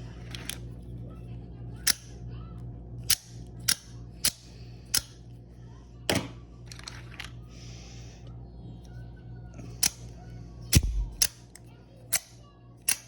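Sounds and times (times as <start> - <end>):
sharp knife clicks: 10.7 - 13.0.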